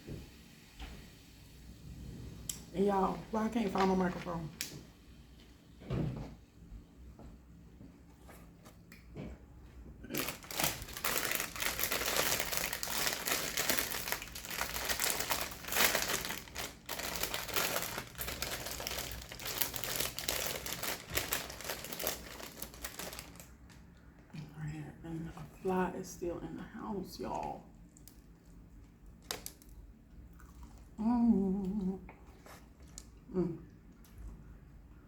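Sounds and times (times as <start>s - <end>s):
wrapping crinkling and rustling: 3.4s - 4.8s, 10.0s - 23.9s, 27.9s - 29.9s.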